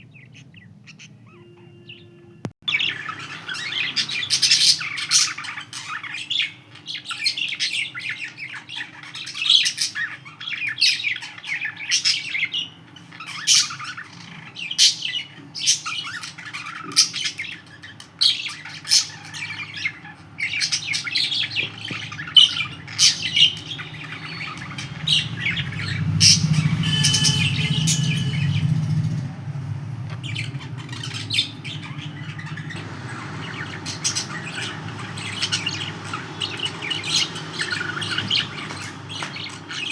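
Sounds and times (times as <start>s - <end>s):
budgerigars chirping and squawking: 0.0s - 39.9s
low hum: 23.5s - 38.7s.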